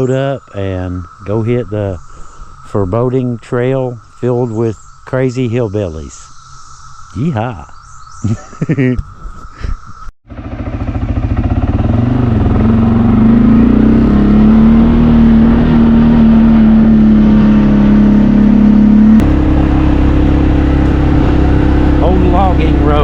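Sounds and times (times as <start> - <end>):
vehicle engine under load: 10.3 - 23.0.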